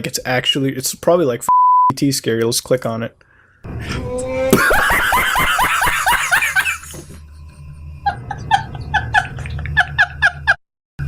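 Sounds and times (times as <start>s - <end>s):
man laughing in high-pitched bursts: 4.4s - 7.0s.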